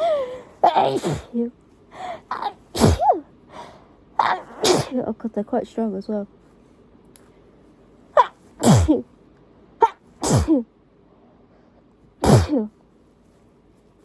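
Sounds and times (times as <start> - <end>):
person sneezing: 0.6 - 1.4, 2.3 - 3.2, 4.2 - 5.0, 8.2 - 9.0, 9.8 - 10.7, 12.2 - 12.7.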